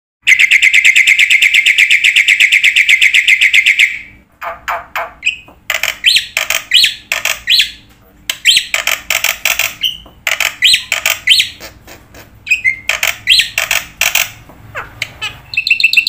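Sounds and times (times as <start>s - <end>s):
bird calling: 0.3s - 16.0s.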